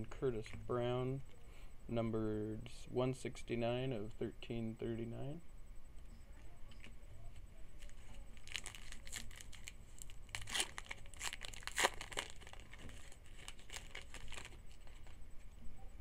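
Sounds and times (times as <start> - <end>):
foil wrapper tearing and crinkling: 7.8 - 15.2.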